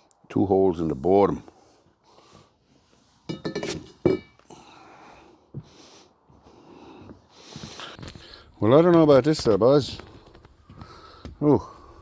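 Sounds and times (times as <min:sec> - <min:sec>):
metal pipes clattering: 0:03.3 - 0:04.4.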